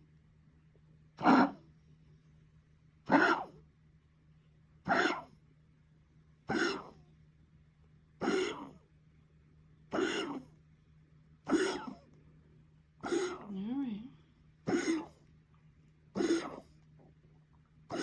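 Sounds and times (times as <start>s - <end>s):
harsh coughs: 3.1s - 3.6s, 4.9s - 5.3s, 6.5s - 7.0s, 8.2s - 8.8s, 9.9s - 10.5s, 11.5s - 12.1s, 13.0s - 13.5s, 14.6s - 15.2s, 16.2s - 16.7s.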